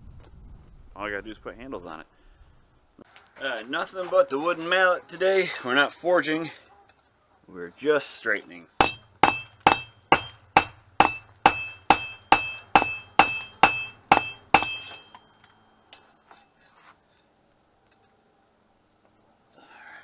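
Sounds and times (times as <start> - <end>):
mallet striking metal blade: 8.8 - 15.2.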